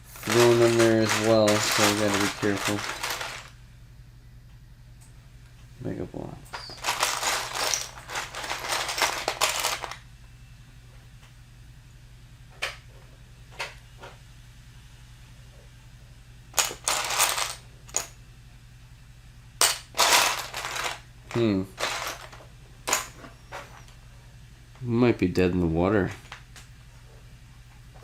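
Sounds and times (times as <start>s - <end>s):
plastic bricks rattling and clacking: 0.1s - 3.5s, 6.7s - 10.0s, 16.6s - 17.6s, 19.6s - 23.1s.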